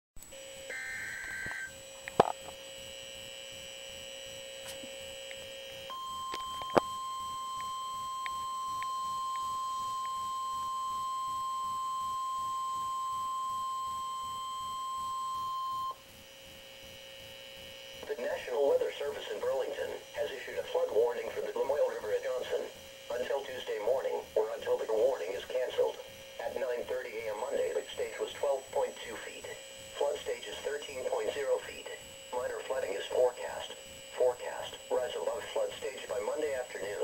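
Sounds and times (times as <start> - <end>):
steady warning alarm tone: 0.3 - 37.0
digital header tones: 5.9 - 16.0.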